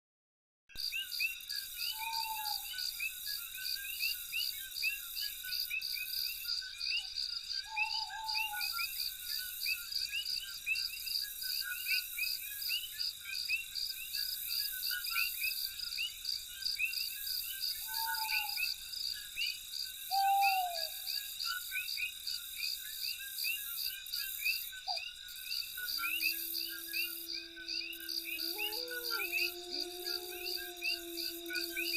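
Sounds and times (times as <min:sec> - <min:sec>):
crickets and insects trilling: 0:17.8 - 0:19.1, 0:19.8 - 0:21.2, 0:24.0 - 0:31.9
animal making low falling calls: 0:25.8 - 0:31.9.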